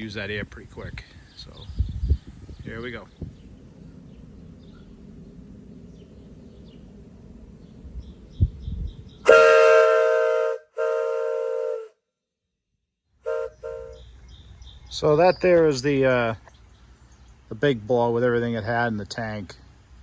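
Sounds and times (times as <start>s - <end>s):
low rumble: 0.9s - 9.2s
locomotive whistle chord: 9.2s - 12.0s, 13.2s - 14.1s.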